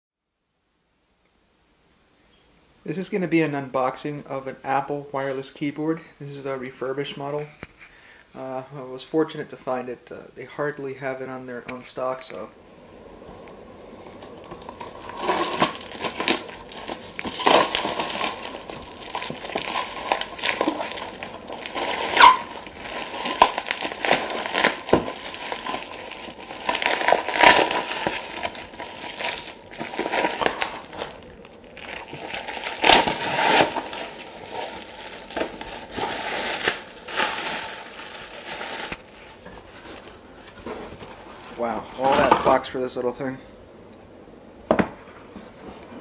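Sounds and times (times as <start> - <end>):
packing material and cardboard rustling: 13.3 - 42.7.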